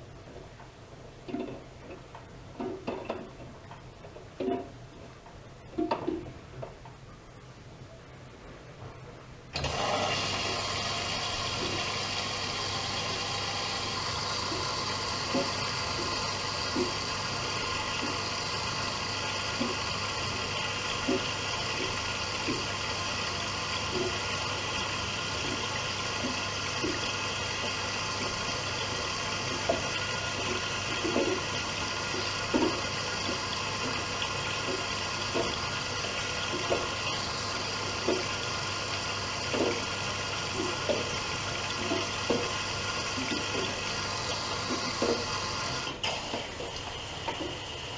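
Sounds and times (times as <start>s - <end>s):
inlet valve opening: 9.6s - 20.5s.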